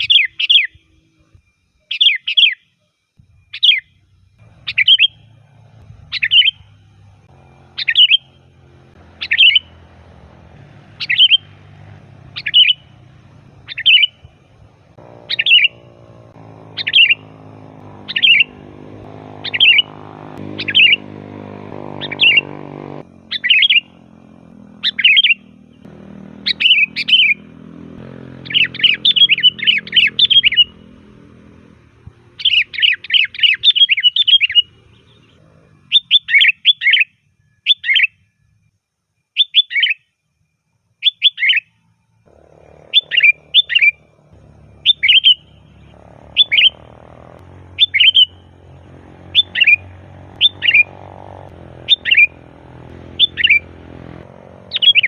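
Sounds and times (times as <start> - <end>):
bird singing liquid phrases: 4.5 - 5.3, 6.1 - 6.7, 7.4 - 14.3, 15.0 - 21.4, 42.6 - 55.0.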